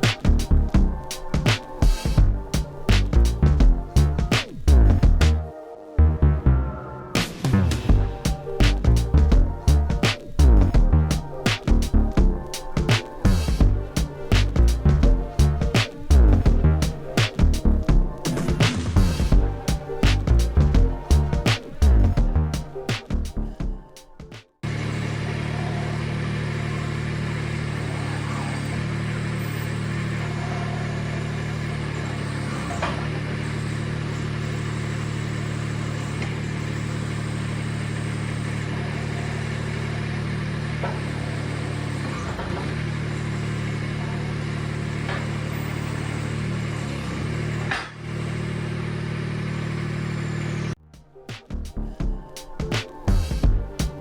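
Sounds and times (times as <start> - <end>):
engine running steadily: 24.7 - 50.8.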